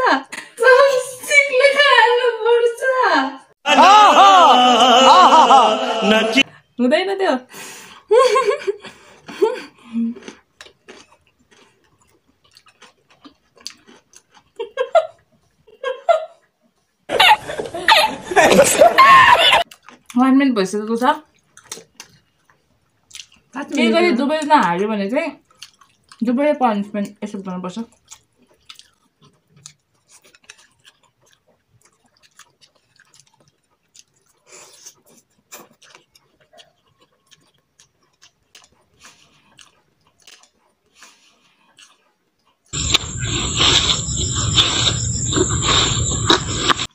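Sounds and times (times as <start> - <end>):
person humming: 3.7 - 6.4
voices and laughter: 3.7 - 6.4, 17.1 - 19.6
chewing: 8.8 - 15.6, 19.6 - 20.2, 21.2 - 24.7, 25.4 - 26.3, 27.8 - 46.9.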